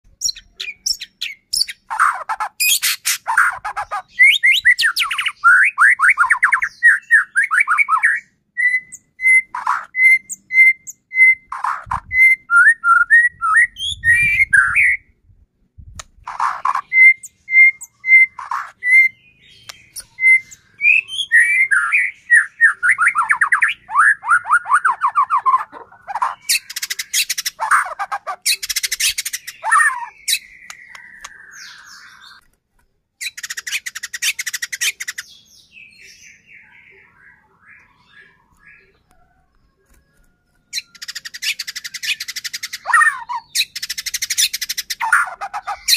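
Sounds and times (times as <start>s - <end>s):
songbird singing: 0.0s - 45.9s.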